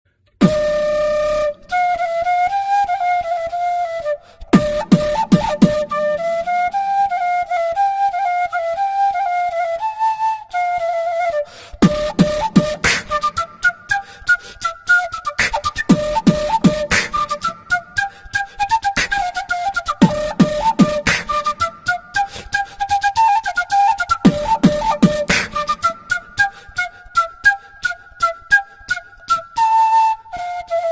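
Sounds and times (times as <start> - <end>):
flute melody: 0.4 - 30.9
percussive beat: 4.6 - 5.9, 11.8 - 13.4, 15.4 - 17.4, 19.9 - 21.7, 24.2 - 25.9.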